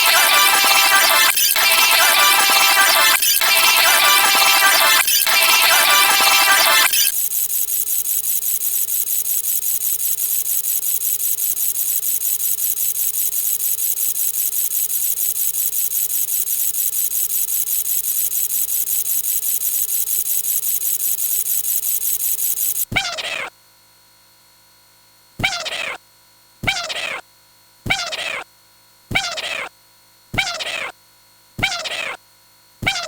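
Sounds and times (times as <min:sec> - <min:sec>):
alarm bell ringing: 0:00.0 - 0:07.1
cat meow: 0:25.4 - 0:26.0, 0:26.6 - 0:27.2, 0:27.9 - 0:28.4, 0:29.1 - 0:29.7, 0:30.4 - 0:30.9, 0:31.6 - 0:32.2.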